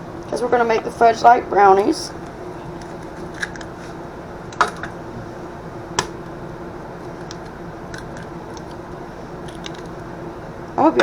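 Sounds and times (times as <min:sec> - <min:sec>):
eggs cracking on bowl rim: 0:02.2 - 0:03.8, 0:07.1 - 0:10.1
shell clicking on bowl: 0:07.2 - 0:10.0.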